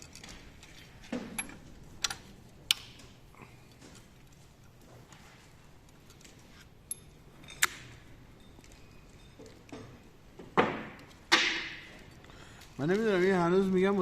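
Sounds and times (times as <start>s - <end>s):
metal tools clinking: 0.0s - 14.0s.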